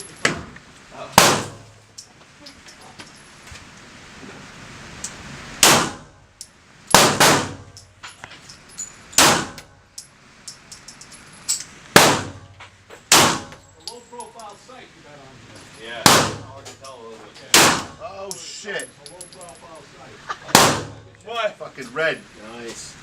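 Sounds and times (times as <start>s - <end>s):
handgun shots with ringing echo: 1.2s - 1.6s, 6.9s - 7.7s, 12.0s - 12.4s, 13.1s - 13.6s, 16.1s - 16.5s, 17.6s - 18.0s, 20.5s - 21.0s.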